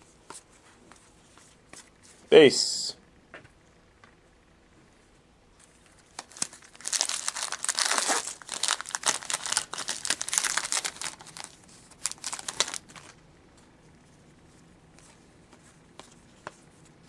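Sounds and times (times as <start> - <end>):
wrapper crinkling and tearing: 6.0 - 13.2.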